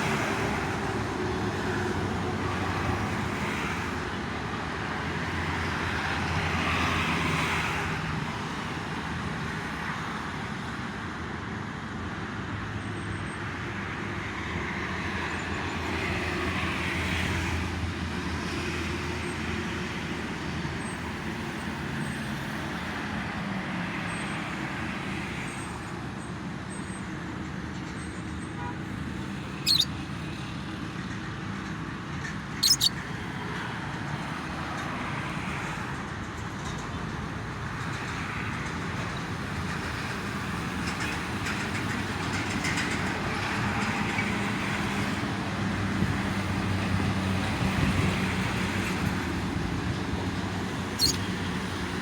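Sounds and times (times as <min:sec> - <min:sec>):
road traffic rumble: 0:26.1 - 0:35.9, 0:39.4 - 0:52.0
bird chirping: 0:29.7 - 0:29.9, 0:32.6 - 0:33.0, 0:51.0 - 0:51.3.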